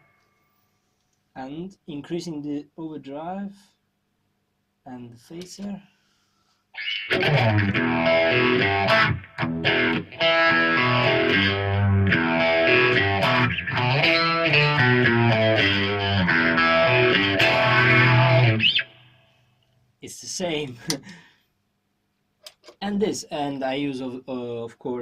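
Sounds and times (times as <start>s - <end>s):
distorted electric guitar lead: 6.8s - 19.1s.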